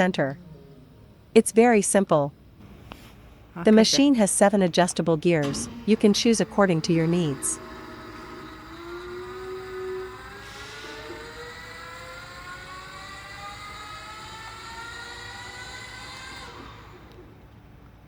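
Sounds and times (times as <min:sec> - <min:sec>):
electric motor whine: 0:05.6 - 0:17.4.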